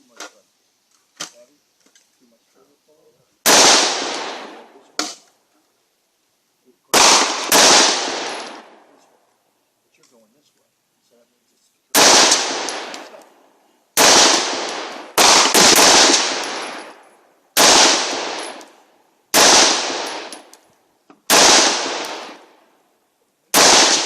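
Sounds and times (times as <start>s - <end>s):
rifle shots echoing: 3.4s - 5.3s, 6.9s - 9.0s, 12.0s - 13.3s, 14.0s - 20.5s, 21.3s - 22.6s, 23.5s - 24.0s.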